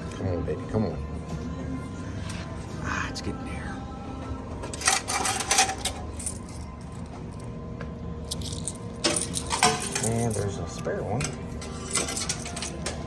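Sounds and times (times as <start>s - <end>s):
coins clinking and clattering: 4.7s - 7.4s, 8.3s - 13.0s.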